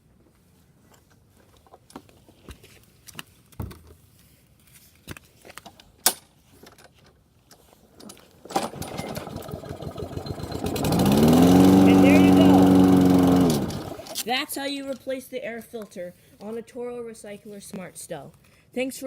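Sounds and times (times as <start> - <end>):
lawn mower engine pull-started: 8.4 - 14.3.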